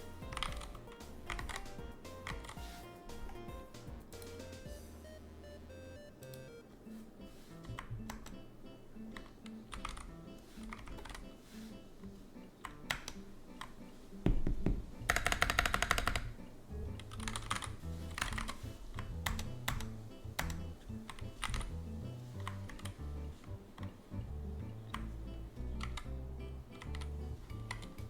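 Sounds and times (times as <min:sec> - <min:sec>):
rapid keyboard clicks: 0:00.0 - 0:04.7, 0:07.6 - 0:08.4, 0:09.1 - 0:11.3, 0:12.6 - 0:13.8, 0:15.0 - 0:23.0, 0:25.7 - 0:26.1, 0:26.8 - 0:28.0
background music: 0:00.0 - 0:28.0
mechanical keyboard key presses: 0:00.2 - 0:02.7, 0:15.1 - 0:16.3, 0:17.0 - 0:18.6.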